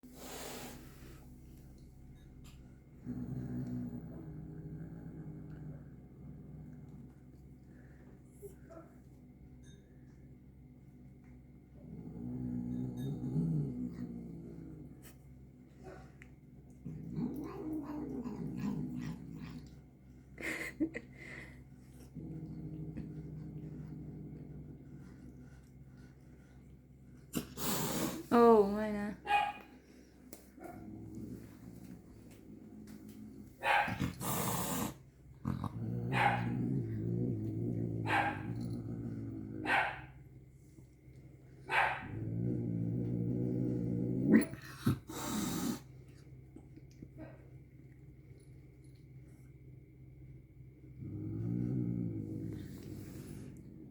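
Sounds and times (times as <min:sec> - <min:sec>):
cat growling: 0:02.9 - 0:07.4, 0:11.8 - 0:28.4, 0:30.6 - 0:40.4, 0:41.4 - 0:47.4, 0:50.8 - 0:53.9
cat hissing: 0:27.3 - 0:28.3.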